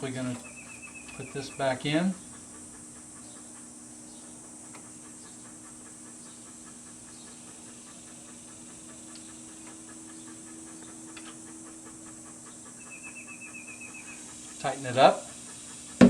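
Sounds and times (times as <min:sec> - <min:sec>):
high hiss: 0:12.8 - 0:16.0.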